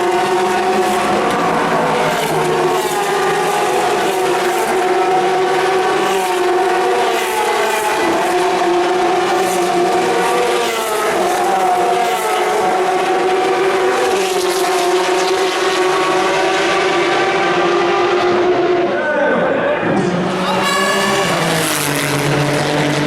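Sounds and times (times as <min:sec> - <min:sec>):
race car engines passing: 0:00.0 - 0:23.0.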